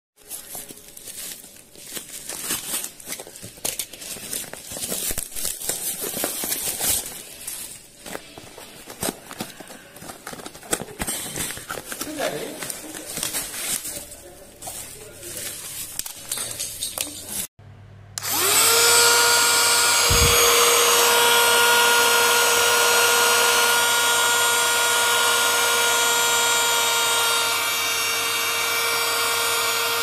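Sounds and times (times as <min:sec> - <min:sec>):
faint handling noises: 0:00.2 - 0:17.5
vacuum cleaner motor whine: 0:18.2 - 0:30.0.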